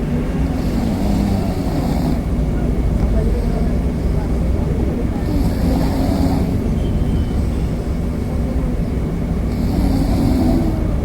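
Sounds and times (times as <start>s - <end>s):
man snoring: 0.5s - 2.3s, 5.2s - 6.6s, 9.5s - 10.9s.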